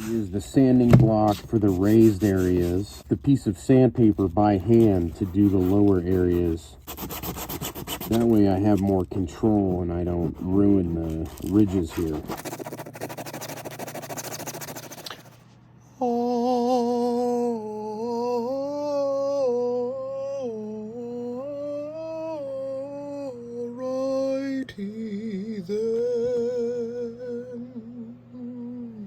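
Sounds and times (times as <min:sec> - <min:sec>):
sandpaper scratching: 0:00.0 - 0:00.3, 0:01.2 - 0:03.2, 0:04.0 - 0:15.4
person humming a tune: 0:16.0 - 0:24.3, 0:25.1 - 0:29.0.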